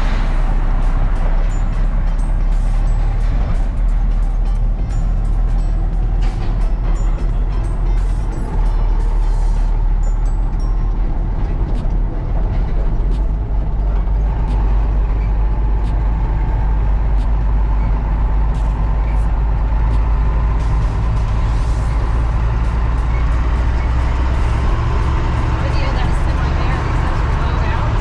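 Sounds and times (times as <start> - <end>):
heavy machinery engine rumble: 0.0 - 28.0.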